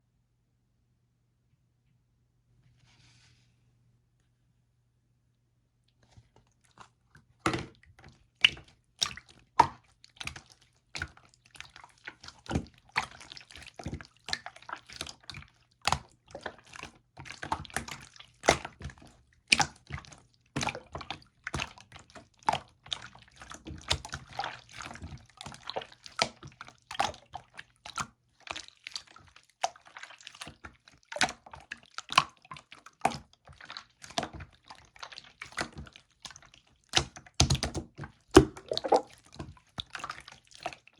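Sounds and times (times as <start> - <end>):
slime squeezed wet pops: 36.9 - 39.2.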